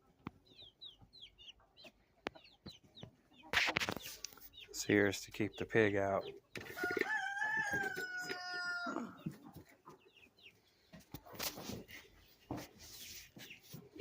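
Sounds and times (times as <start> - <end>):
faint chicken clucks: 0.0 - 14.0
rooster crowing: 6.7 - 9.3.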